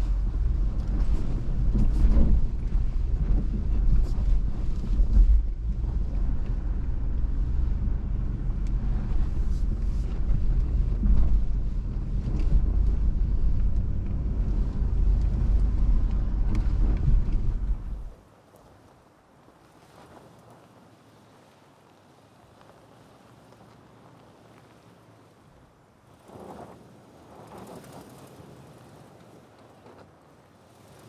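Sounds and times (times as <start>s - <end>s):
vehicle engine and tyres rumbling: 0.0s - 18.2s.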